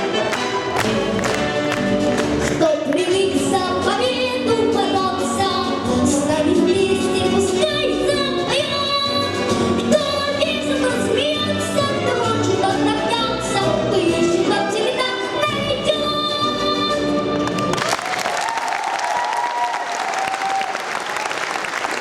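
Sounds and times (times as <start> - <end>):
instrumental accompaniment with beat: 0.0 - 3.7
girl singing: 2.6 - 17.2.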